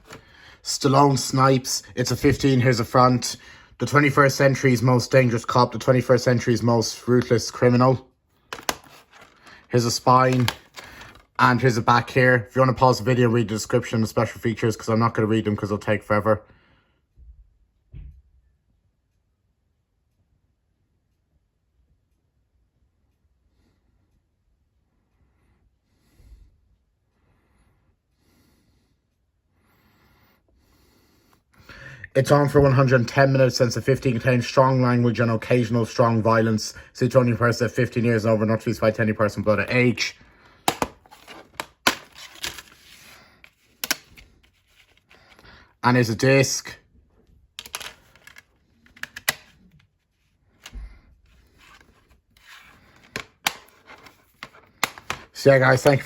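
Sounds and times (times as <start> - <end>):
plastic case clicks: 8.5 - 9.5, 10.3 - 11.2, 40.7 - 42.6, 53.0 - 56.0
brief low thump: 17.9 - 18.3
faint breaths: 24.9 - 32.1.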